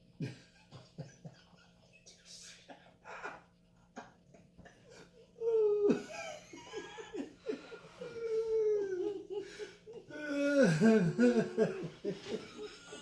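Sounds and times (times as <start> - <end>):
person laughing loudly: 0.2 - 13.0.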